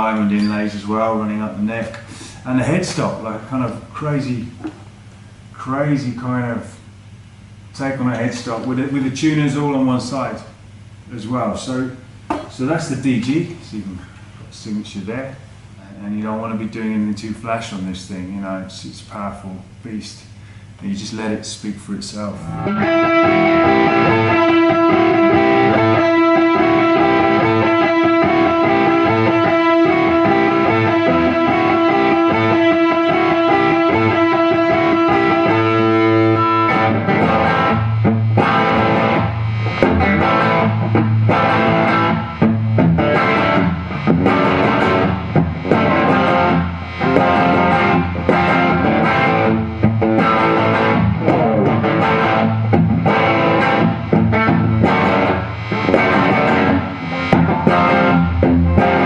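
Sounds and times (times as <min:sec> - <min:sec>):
electric guitar chords: 0:22.4 - 0:59.0.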